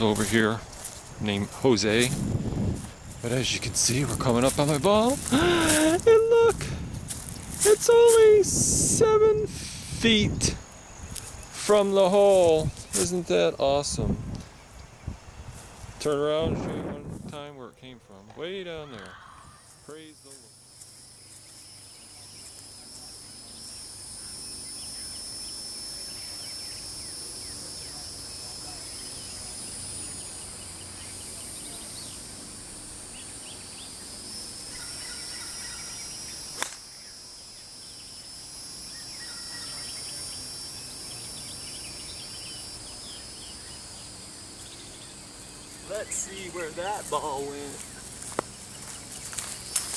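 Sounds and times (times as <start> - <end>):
insects droning: 0.0 - 49.9
bird chirps: 19.6 - 32.4, 33.0 - 49.9
golf club striking ball: 36.6 - 36.9.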